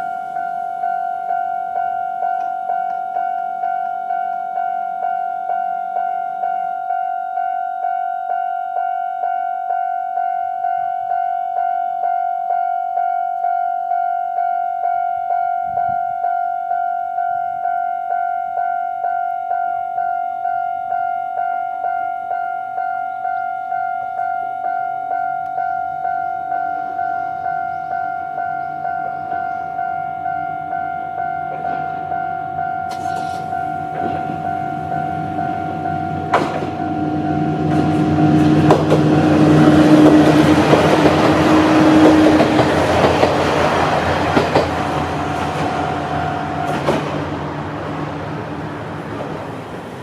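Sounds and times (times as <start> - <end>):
level crossing electronic bell: 0.0 - 37.6.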